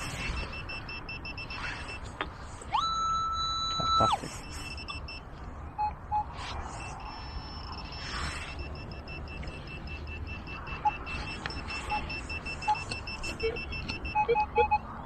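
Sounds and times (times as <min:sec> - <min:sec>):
short low beeps: 0:00.1 - 0:02.1, 0:02.8 - 0:14.9
metal detector tone: 0:02.8 - 0:05.2, 0:05.8 - 0:14.8.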